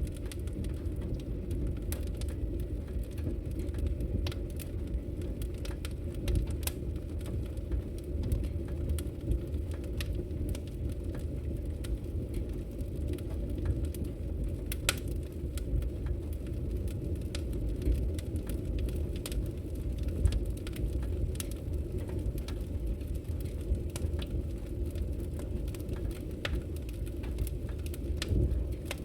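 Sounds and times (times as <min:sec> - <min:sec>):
wood fire crackling and popping: 0:00.0 - 0:29.0.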